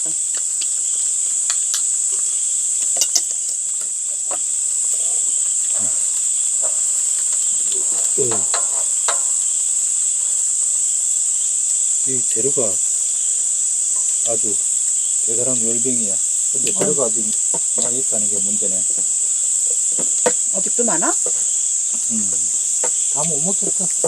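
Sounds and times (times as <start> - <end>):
crickets chirping: 0.0 - 24.0
murmurs of voice: 22.1 - 22.6.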